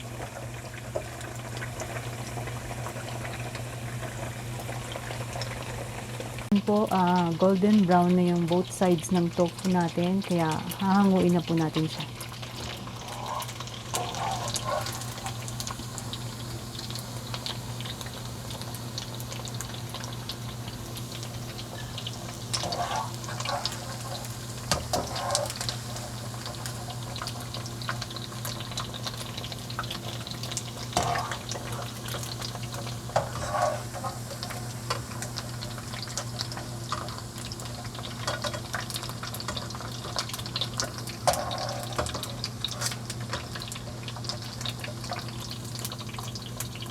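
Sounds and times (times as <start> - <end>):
oil sizzling and crackling: 0.0 - 46.9.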